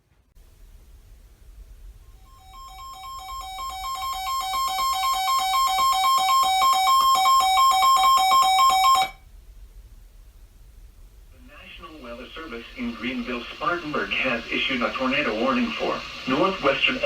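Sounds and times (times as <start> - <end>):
radio alert alarm beeps: 2.3 - 9.2.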